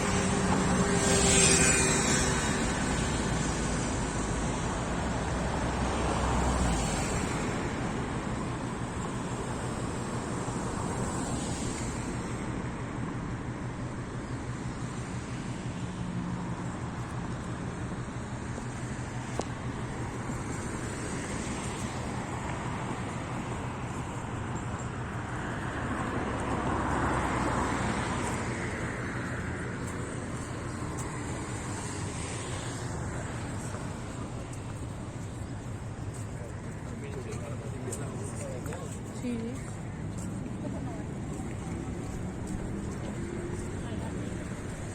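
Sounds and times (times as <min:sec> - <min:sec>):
vehicle passing: 0:00.0 - 0:12.2, 0:25.1 - 0:44.9
low engine hum: 0:00.0 - 0:44.9
traffic noise: 0:00.0 - 0:44.9.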